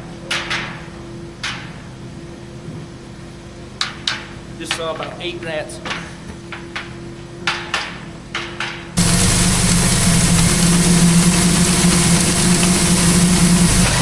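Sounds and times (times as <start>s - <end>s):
engine running steadily: 9.0s - 14.0s.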